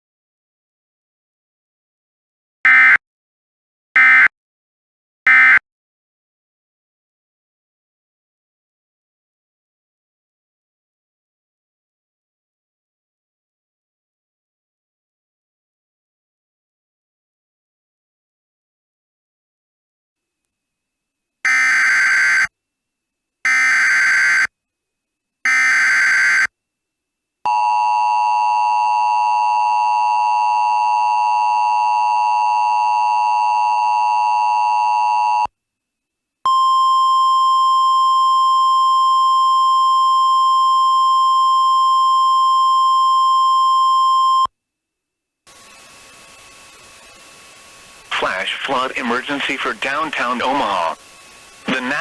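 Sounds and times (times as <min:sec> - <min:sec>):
buzzing data header bursts: 0:45.5 - 0:52.0.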